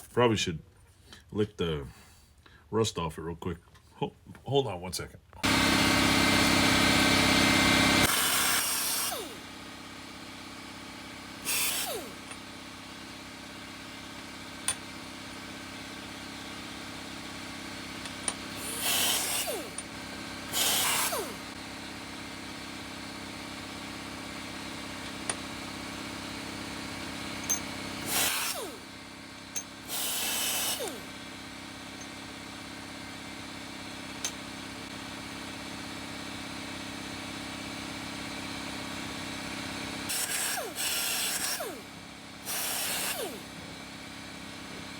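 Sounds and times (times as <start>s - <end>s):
bench grinder motor hum: 5.4s - 44.9s.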